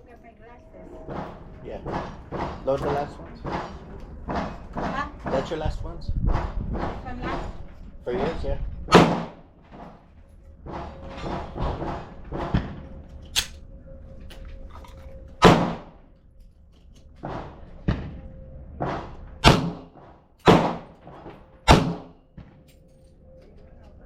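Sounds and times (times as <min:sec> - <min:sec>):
handgun shots with echo: 0:08.9 - 0:09.4, 0:13.4 - 0:13.6, 0:15.4 - 0:15.9, 0:18.9 - 0:20.9, 0:21.7 - 0:22.2.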